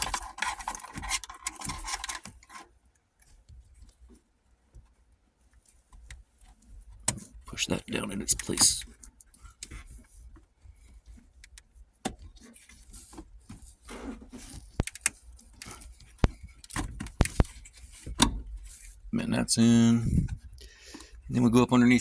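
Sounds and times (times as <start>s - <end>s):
plastic parts clicking and rattling: 0.0s - 4.2s, 5.9s - 19.0s.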